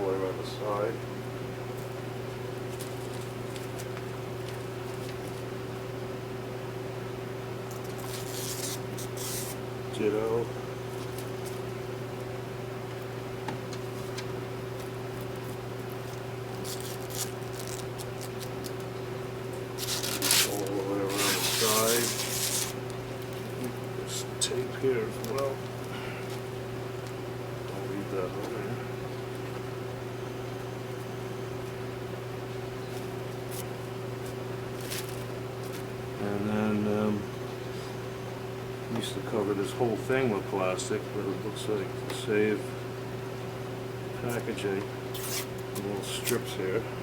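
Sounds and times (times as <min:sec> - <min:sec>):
steady low hum: 0:00.0 - 0:47.0
plastic film peeling crackles: 0:02.7 - 0:05.5, 0:07.7 - 0:09.6, 0:14.8 - 0:19.0, 0:19.6 - 0:23.7, 0:25.1 - 0:27.2, 0:33.0 - 0:35.9.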